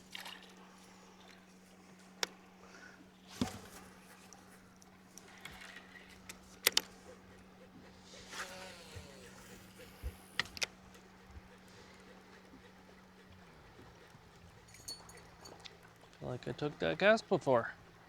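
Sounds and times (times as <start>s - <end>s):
reel spool whirring: 0.0s - 18.0s
steady low hum: 0.0s - 18.0s.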